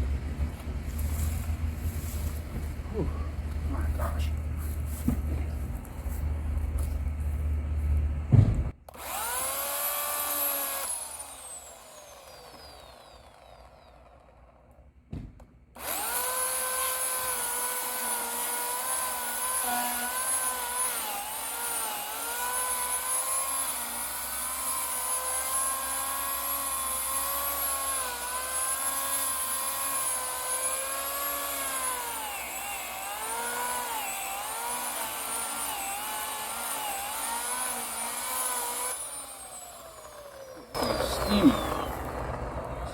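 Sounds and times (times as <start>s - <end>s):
electric chainsaw motor whining: 8.9s - 14.8s, 15.8s - 42.9s.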